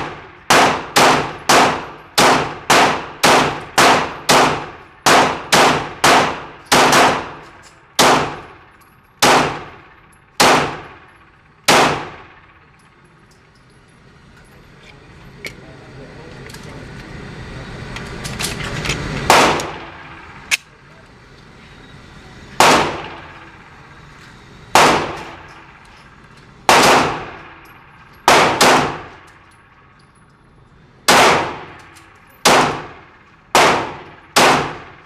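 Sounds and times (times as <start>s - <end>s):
pistol shots with echo: 0.0s - 8.6s, 9.2s - 11.1s, 11.7s - 12.5s, 19.3s - 20.2s, 22.6s - 23.4s, 24.8s - 25.8s, 26.7s - 27.6s, 28.2s - 29.2s, 31.1s - 31.8s, 32.4s - 35.0s
steady noise: 14.2s - 30.0s.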